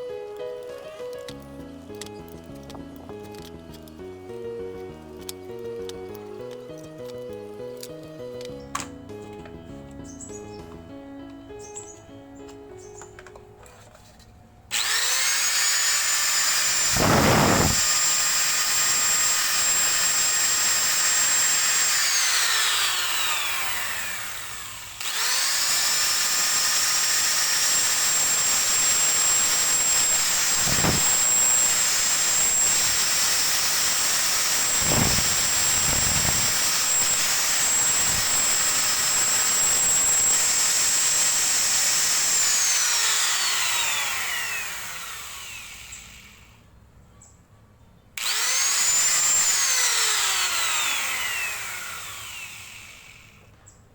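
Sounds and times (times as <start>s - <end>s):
angle grinder whining: 14.7s - 46.6s, 48.2s - 53.5s.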